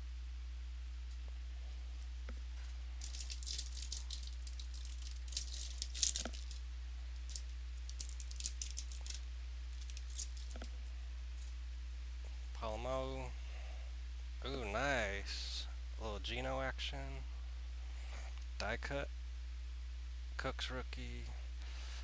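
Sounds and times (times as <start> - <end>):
low electrical hum: 0.0 - 22.0
cards rustling and flicking: 2.4 - 6.6, 7.2 - 9.2, 9.8 - 11.5.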